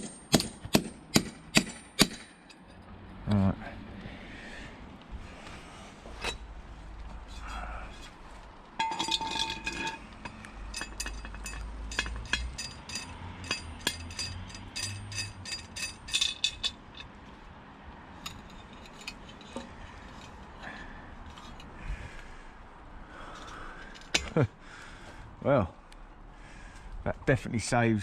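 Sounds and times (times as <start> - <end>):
metallic clinks and taps: 8.8 - 17.1.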